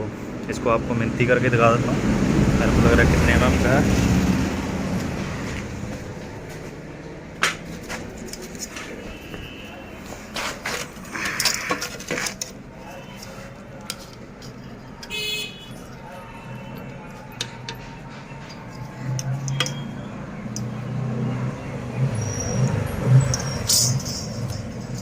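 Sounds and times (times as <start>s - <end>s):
metal parts clinking and knocking: 7.8s - 9.0s, 10.4s - 20.8s, 22.6s - 25.0s.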